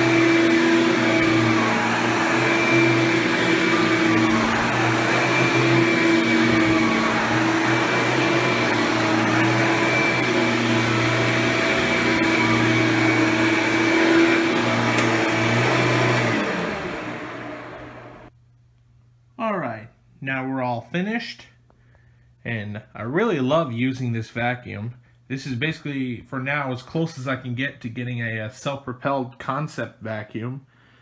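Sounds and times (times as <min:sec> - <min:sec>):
upright vacuum running: 0:00.0 - 0:18.3
vacuum motor winding down: 0:00.0 - 0:18.3.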